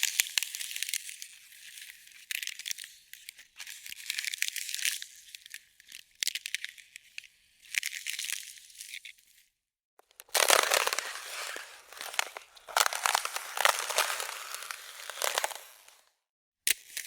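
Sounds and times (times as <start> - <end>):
ice cracking and crunching: 10.2 - 16.0.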